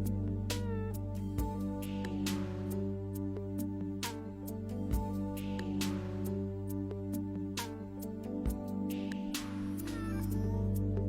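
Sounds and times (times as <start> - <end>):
soft instrumental music: 0.0 - 11.0.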